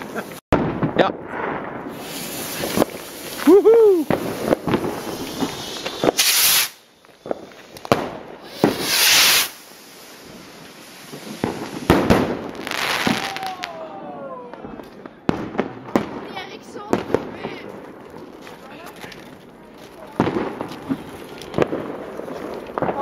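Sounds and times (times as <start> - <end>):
firecracker bangs and crackles: 0.0 - 13.9, 14.5 - 23.0
loud hissing bursts: 1.9 - 6.8, 8.4 - 10.3.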